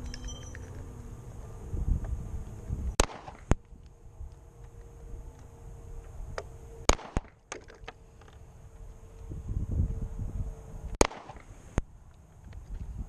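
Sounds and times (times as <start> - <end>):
pistol shots: 3.0 - 3.6, 6.9 - 7.5, 11.0 - 11.5.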